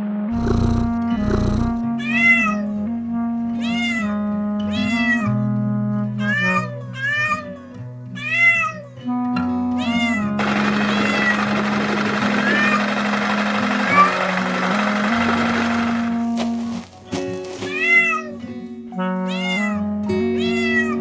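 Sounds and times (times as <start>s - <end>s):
background music low notes: 0.0s - 21.0s
cat meowing: 0.4s - 2.8s, 3.6s - 5.4s, 6.2s - 9.0s, 9.8s - 10.4s, 17.7s - 18.4s, 19.3s - 21.0s.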